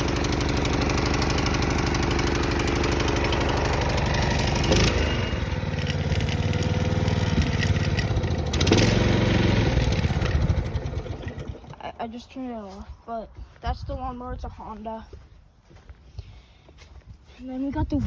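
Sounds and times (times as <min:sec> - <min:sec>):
lawnmower engine running: 0:00.0 - 0:12.8.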